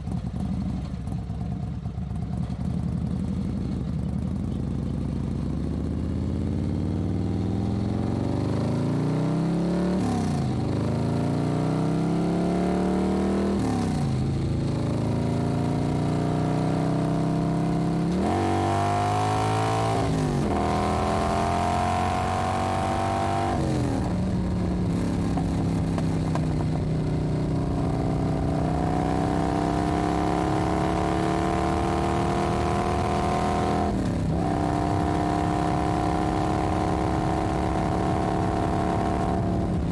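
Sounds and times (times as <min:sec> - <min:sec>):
motorcycle engine: 0:10.1 - 0:39.9.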